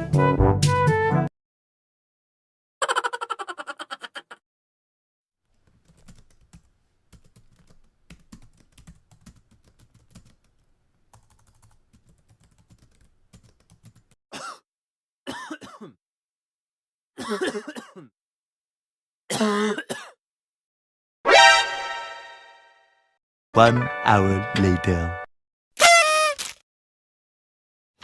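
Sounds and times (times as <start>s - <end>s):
faint keyboard typing: 5.5s - 14.2s
person coughing: 14.3s - 14.7s, 15.3s - 16.0s, 17.2s - 18.2s, 19.3s - 20.2s.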